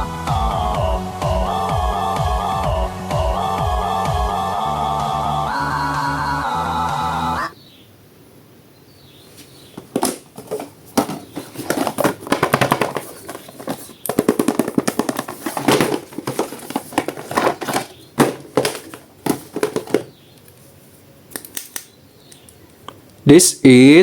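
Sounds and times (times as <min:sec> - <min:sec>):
plastic packaging clicking and crackling: 0:09.8 - 0:20.5.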